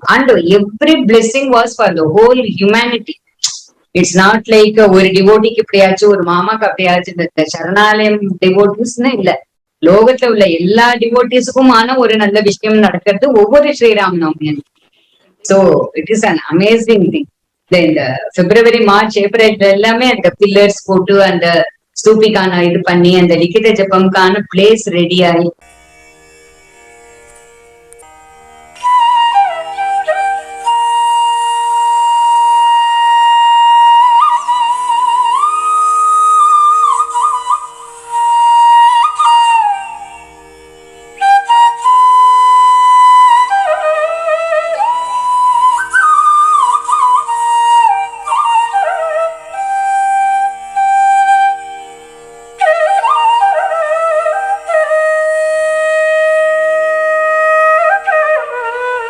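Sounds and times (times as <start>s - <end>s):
slow instrumental melody: 25.6s - 56.8s.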